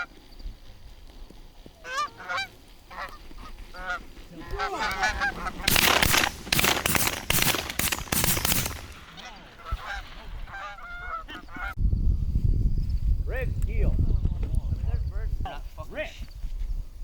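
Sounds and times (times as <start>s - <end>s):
geese honking: 1.8s - 6.4s, 8.6s - 11.8s
shotgun blasts: 5.6s - 9.4s.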